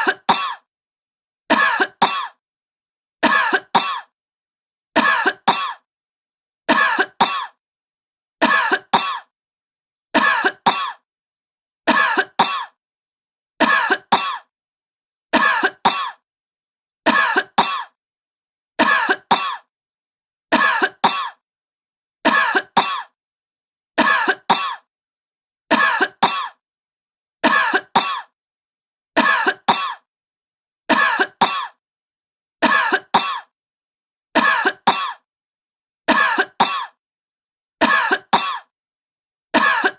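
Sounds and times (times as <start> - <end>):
woman coughing: 0.0 - 0.7, 1.5 - 2.4, 3.2 - 4.2, 5.0 - 5.9, 6.7 - 7.6, 8.4 - 9.3, 10.2 - 11.0, 11.9 - 12.8, 13.6 - 14.5, 15.4 - 16.2, 17.1 - 18.0, 18.8 - 19.7, 20.6 - 21.4, 22.3 - 23.2, 24.0 - 24.9, 25.7 - 26.6, 27.4 - 28.4, 29.2 - 30.1, 30.9 - 31.8, 32.6 - 33.5, 34.4 - 35.3, 36.1 - 37.0, 37.8 - 38.7, 39.6 - 39.9.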